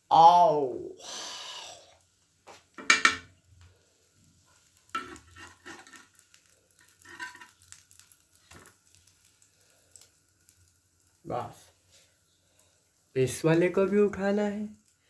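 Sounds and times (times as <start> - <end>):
food sizzling faintly: 0.8 - 15.0
utensil scraping a pan: 4.9 - 6.2, 6.8 - 7.7.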